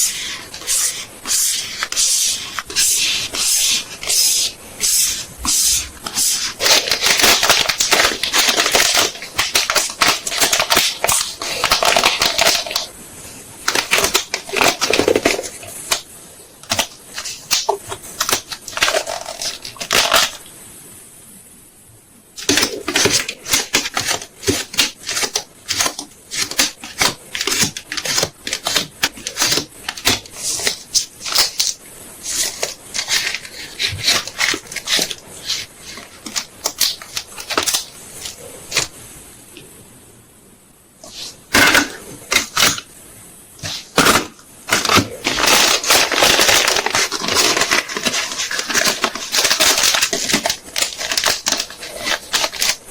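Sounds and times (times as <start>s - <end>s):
plastic packaging crinkling: 0.0s - 12.9s, 13.6s - 20.4s, 22.4s - 39.0s, 41.0s - 42.9s, 43.6s - 52.9s.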